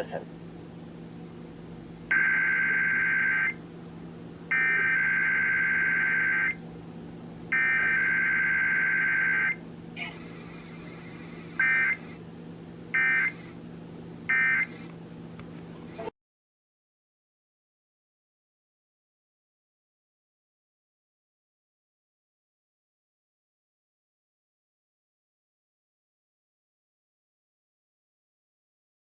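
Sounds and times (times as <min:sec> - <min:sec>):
steady low hum: 0:00.0 - 0:16.1.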